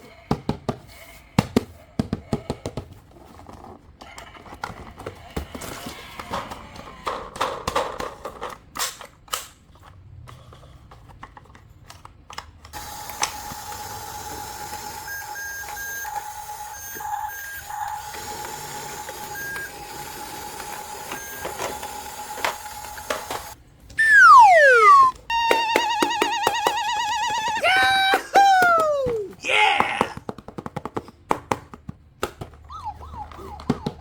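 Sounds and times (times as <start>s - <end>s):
short high beeps: 24.0s - 25.2s
steady electronic tone: 24.0s - 25.2s
loud falling whistle: 24.0s - 27.6s.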